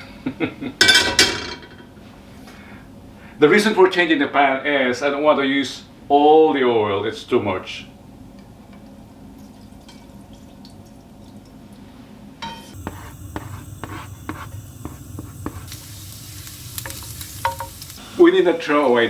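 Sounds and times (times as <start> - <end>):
hot oil sizzling: 12.7 - 19.0
utensil knocking against pan: 16.8 - 17.7.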